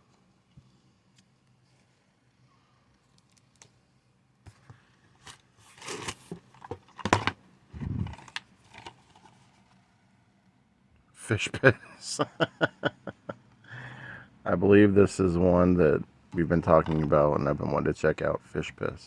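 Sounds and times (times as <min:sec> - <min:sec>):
package rustling and scraping: 0:04.5 - 0:09.9.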